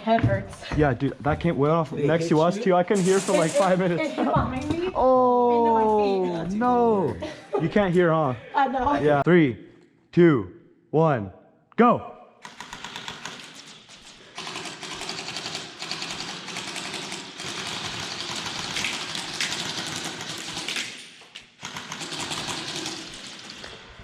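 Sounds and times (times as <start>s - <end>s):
airsoft guns firing full auto: 12.4s - 13.5s, 14.4s - 21.0s, 21.6s - 23.6s.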